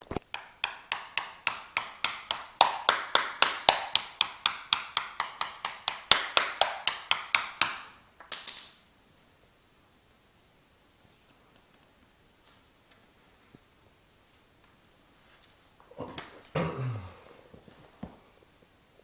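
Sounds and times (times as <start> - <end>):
rapid tapping on hard surface: 0.2 - 8.5.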